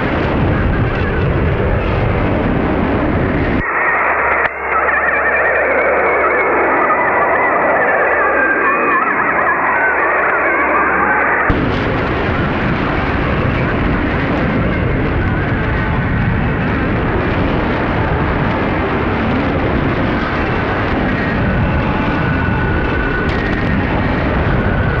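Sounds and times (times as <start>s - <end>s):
radio receiver rushing noise: 0.0s - 10.1s
faint steady data tones: 3.3s - 11.5s.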